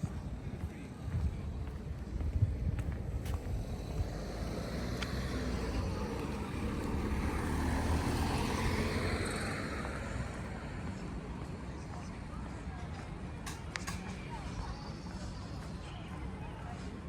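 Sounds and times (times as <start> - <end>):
steady low rumble: 0.0 - 7.2
vehicle passing by: 3.1 - 11.4.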